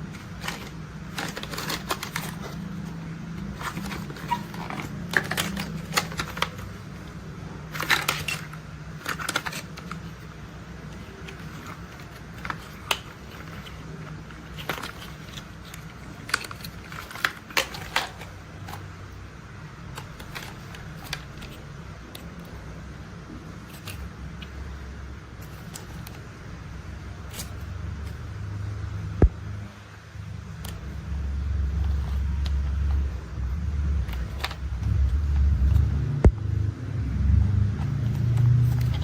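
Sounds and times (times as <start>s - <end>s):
plastic toy vehicles clicking: 0.0s - 6.7s, 7.7s - 10.2s
low engine-like rumble: 18.5s - 39.0s.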